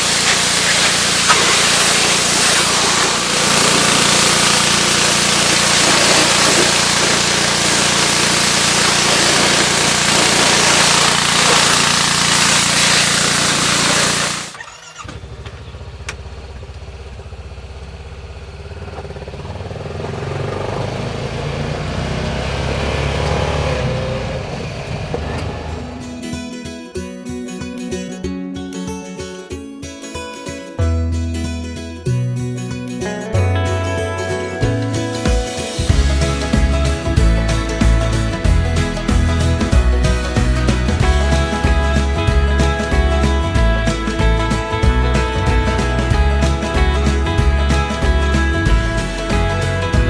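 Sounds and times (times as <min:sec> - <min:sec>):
pressure washer spray hissing: 0:00.0 - 0:14.6, 0:35.2 - 0:49.4
pressure washer engine: 0:00.0 - 0:26.8, 0:33.9 - 0:50.0.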